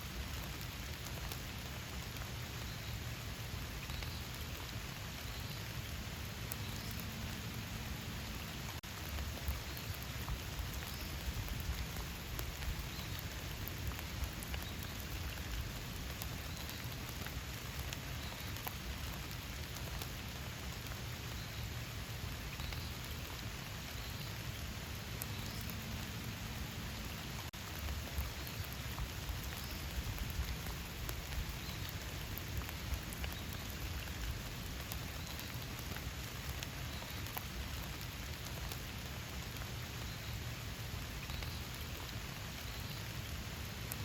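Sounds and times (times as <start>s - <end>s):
raindrops ticking: 0.0s - 44.0s
steady rain falling: 0.0s - 44.0s.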